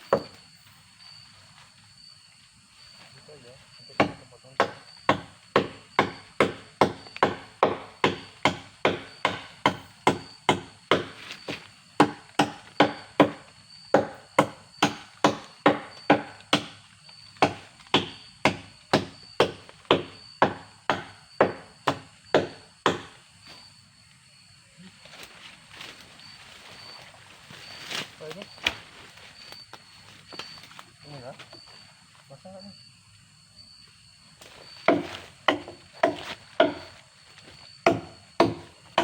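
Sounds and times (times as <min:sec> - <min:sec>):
wood being chopped: 0:00.0 - 0:00.4, 0:04.0 - 0:23.2, 0:34.4 - 0:37.0, 0:37.8 - 0:39.0.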